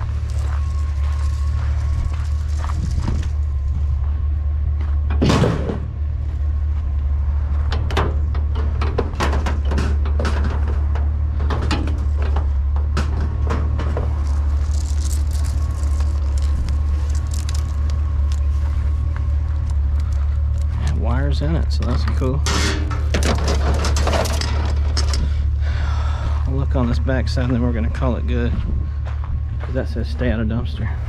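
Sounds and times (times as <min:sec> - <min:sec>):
steady low hum: 0:00.0 - 0:31.0
junk clattering in a dumpster: 0:05.0 - 0:06.0, 0:07.6 - 0:16.6, 0:21.7 - 0:25.4
loud crash: 0:05.2 - 0:05.9.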